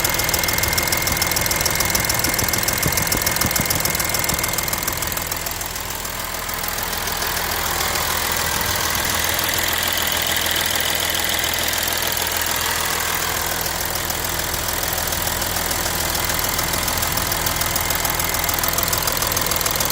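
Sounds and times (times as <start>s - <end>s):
diesel engine idling: 0.0s - 19.9s
fast metallic ticking: 0.2s - 14.2s.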